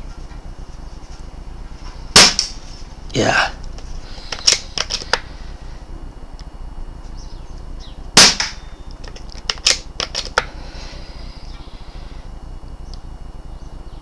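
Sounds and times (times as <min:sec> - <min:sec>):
air rifle shot crack: 0:02.1 - 0:02.7, 0:08.2 - 0:08.7
sharp clicks: 0:03.7 - 0:05.3, 0:08.4 - 0:10.5.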